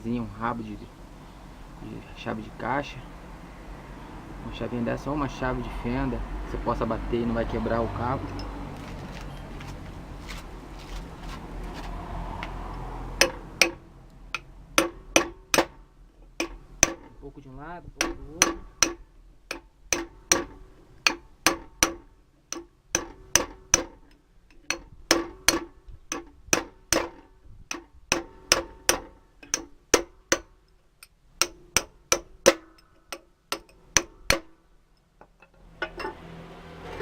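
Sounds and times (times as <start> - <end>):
hammer tapping on steel: 13.2 - 13.8, 14.4 - 15.8, 16.4 - 17.1, 18.0 - 24.0, 24.6 - 30.6, 31.4 - 34.6.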